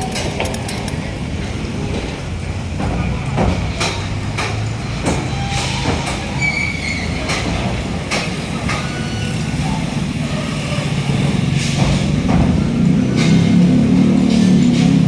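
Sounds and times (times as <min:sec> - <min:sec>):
heavy road traffic rumble: 0:00.0 - 0:15.0
brief high squeal: 0:05.3 - 0:07.2.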